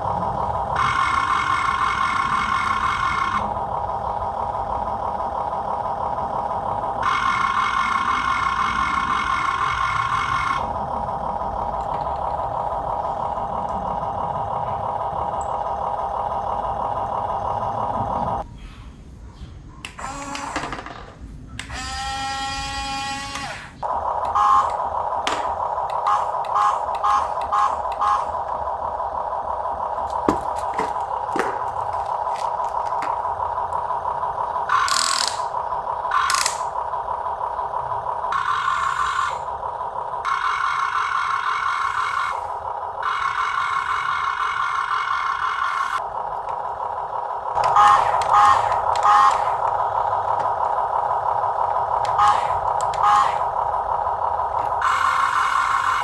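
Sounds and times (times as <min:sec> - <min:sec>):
electric gear motors whirring: 0:19.8 - 0:21.0, 0:21.6 - 0:56.0
small electric motor whining: 0:20.0 - 0:20.7, 0:21.6 - 0:24.8
pulsing sound: 0:21.7 - 0:56.0.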